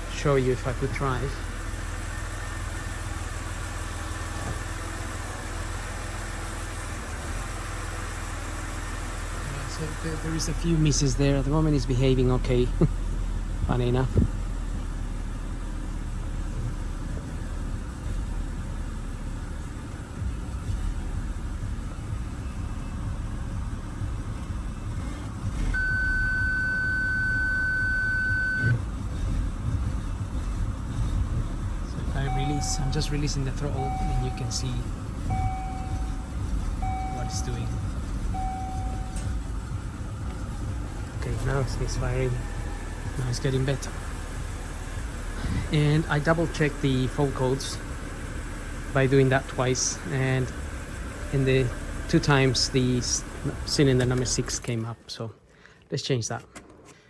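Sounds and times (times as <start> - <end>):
car engine idling with misfires: 0.0 - 55.2
electronic beep: 25.8 - 28.8, 32.2 - 33.1, 33.7 - 34.6, 35.3 - 39.5.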